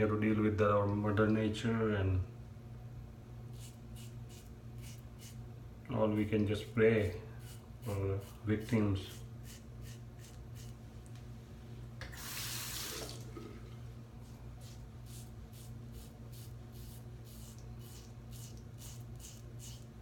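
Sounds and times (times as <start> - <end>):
steady low hum: 0.0 - 20.0
razor scraping stubble: 3.5 - 5.4, 7.0 - 10.8, 14.6 - 19.9
tap water running: 12.0 - 13.8.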